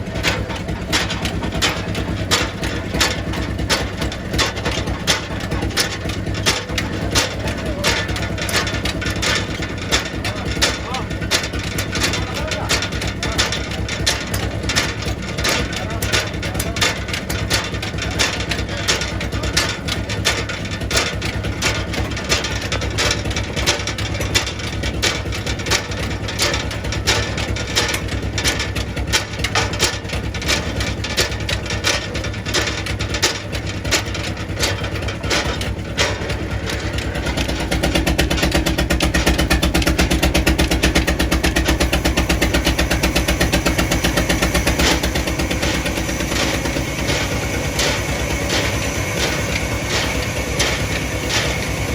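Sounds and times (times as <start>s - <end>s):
sawmill machine running: 0.0s - 51.9s
sharp knocks and clatter: 0.0s - 51.9s.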